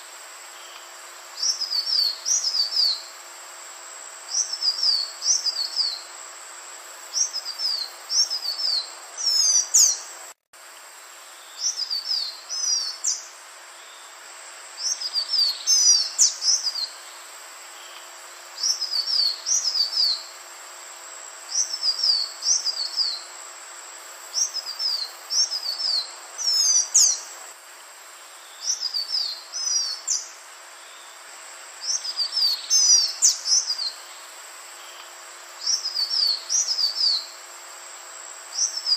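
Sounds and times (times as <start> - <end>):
steady background hiss: 0.0 - 38.9
bird singing whistled notes: 1.4 - 3.1, 4.3 - 6.1, 7.1 - 10.1, 11.4 - 14.1, 14.8 - 17.0, 21.5 - 23.3, 24.4 - 27.3, 28.4 - 31.1, 31.8 - 34.2, 35.6 - 37.4.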